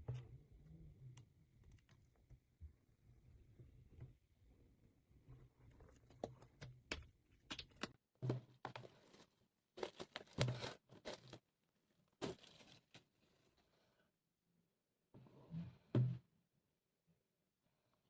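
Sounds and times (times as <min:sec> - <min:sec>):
packaging crinkling and rustling: 0:08.7 - 0:11.4, 0:12.2 - 0:13.1.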